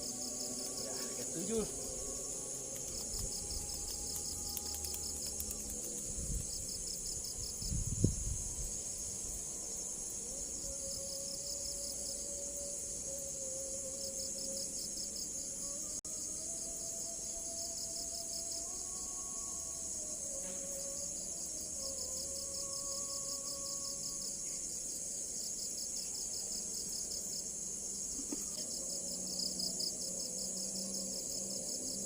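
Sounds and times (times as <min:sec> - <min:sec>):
crickets chirring: 0:00.0 - 0:32.0.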